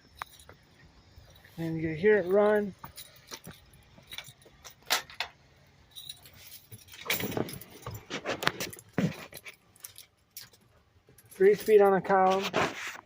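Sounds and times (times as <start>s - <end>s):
keys jangling: 0.0s - 12.3s
keys clattering: 0.0s - 12.4s
light handling clicks and knocks: 2.2s - 12.3s.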